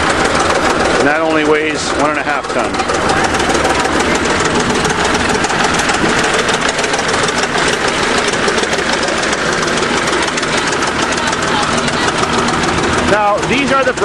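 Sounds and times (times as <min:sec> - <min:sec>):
diesel engine idling with clatter: 0:00.0 - 0:14.0.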